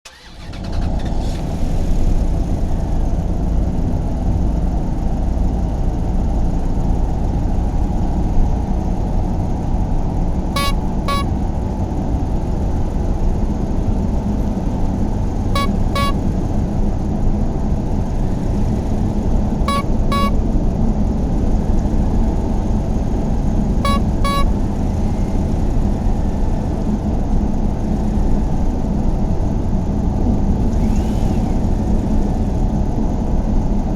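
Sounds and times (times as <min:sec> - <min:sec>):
high double horn beep: 0:10.6 - 0:11.4, 0:15.6 - 0:16.3, 0:19.7 - 0:20.4, 0:23.8 - 0:24.6.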